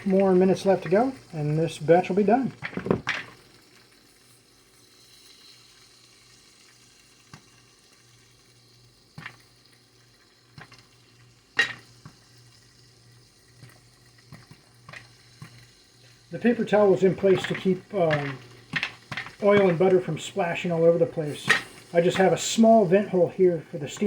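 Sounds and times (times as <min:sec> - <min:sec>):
popcorn kernels popping: 0:00.0 - 0:04.0, 0:09.1 - 0:09.6, 0:10.4 - 0:12.4, 0:13.5 - 0:23.1
hot oil sizzling: 0:00.0 - 0:24.0
popcorn popper hum: 0:00.0 - 0:24.0.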